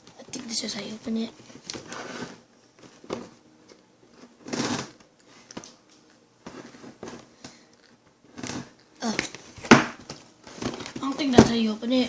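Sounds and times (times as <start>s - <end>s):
cardboard scraping rustle: 1.8s - 3.3s, 4.2s - 5.0s, 10.4s - 11.1s.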